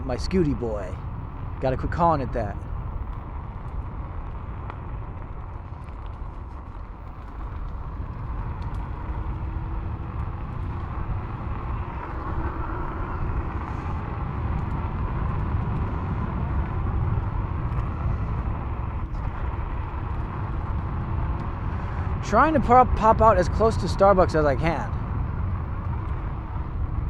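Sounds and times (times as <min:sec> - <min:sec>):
faint motor whine: 0:00.0 - 0:27.0
tyre noise: 0:00.0 - 0:27.0
wind on microphone: 0:02.5 - 0:27.0
small clicks and rattles: 0:02.7 - 0:22.2.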